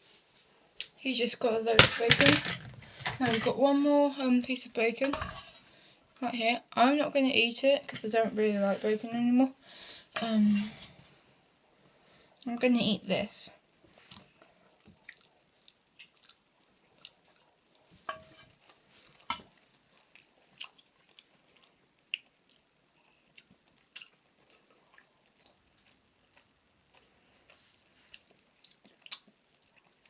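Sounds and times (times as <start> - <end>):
person chewing bacon: 14.7 - 17.8, 19.9 - 30.0.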